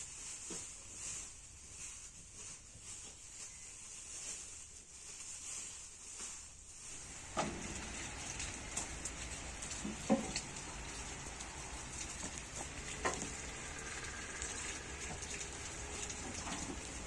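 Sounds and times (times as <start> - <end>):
patties sizzling in hot oil: 6.2 - 17.0
rain pattering: 6.6 - 17.0.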